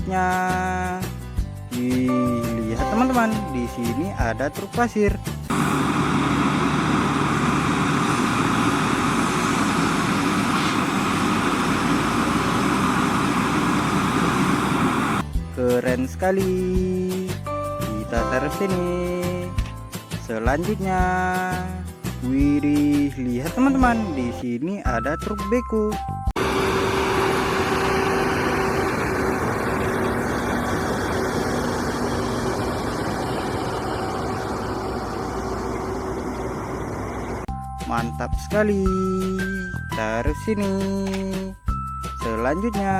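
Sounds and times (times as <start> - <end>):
vehicle engine running: 5.3 - 15.4, 26.4 - 37.5.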